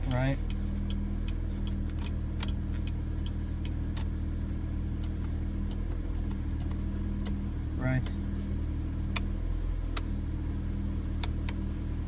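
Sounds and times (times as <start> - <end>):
car engine idling: 0.0 - 12.0
turn signal ticking: 0.0 - 12.0.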